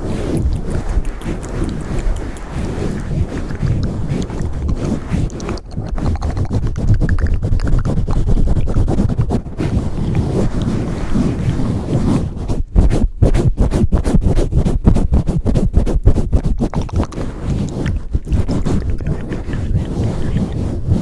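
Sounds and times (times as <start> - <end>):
hands rubbing on microphone: 0.0 - 21.0.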